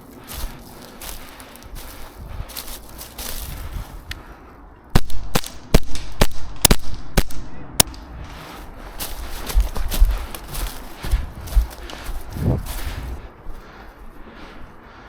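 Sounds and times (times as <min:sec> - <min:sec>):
rustling movement: 0:00.0 - 0:04.4, 0:08.0 - 0:15.0
airsoft gun shots: 0:05.0 - 0:08.1.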